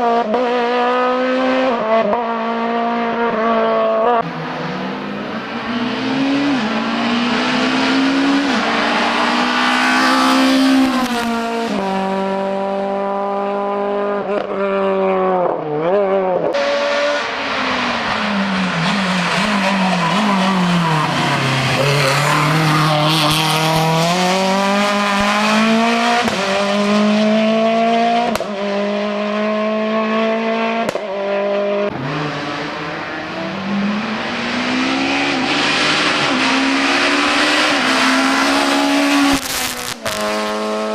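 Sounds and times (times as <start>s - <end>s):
race car engine revving hard: 0.0s - 40.9s.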